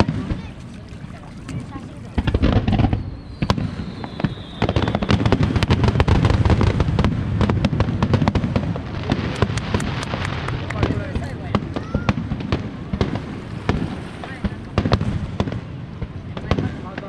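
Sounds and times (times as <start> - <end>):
fireworks bangs and crackles: 0.0 - 0.6, 1.5 - 17.0
firework whistle sliding downward: 3.0 - 5.5.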